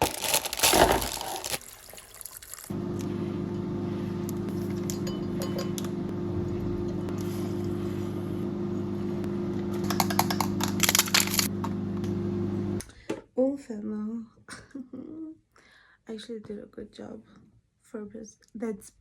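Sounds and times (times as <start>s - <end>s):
low mechanical hum: 2.7s - 12.8s
glassy clinks and taps: 4.8s - 5.9s.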